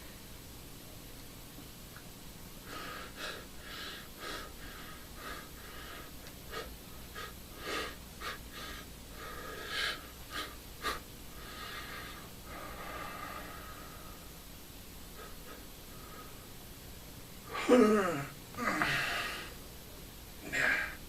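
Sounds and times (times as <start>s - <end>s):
person wheezing and panting: 2.6s - 14.1s, 17.5s - 19.6s.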